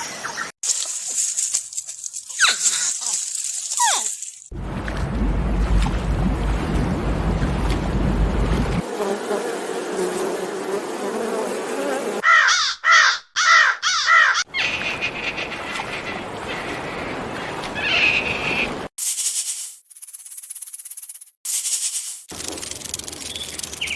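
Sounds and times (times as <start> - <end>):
animal calling: 12.2 - 16.0.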